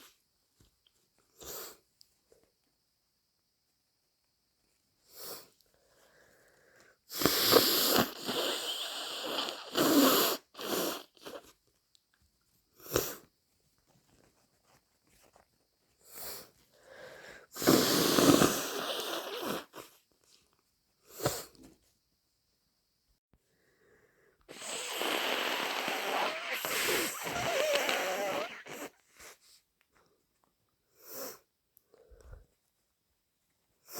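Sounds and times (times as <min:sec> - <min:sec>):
short nasal bursts: 0:07.1 - 0:11.5, 0:17.5 - 0:20.0, 0:24.5 - 0:29.4
person blowing nose: 0:07.1 - 0:11.6, 0:12.8 - 0:13.3, 0:17.4 - 0:20.0, 0:24.5 - 0:29.4.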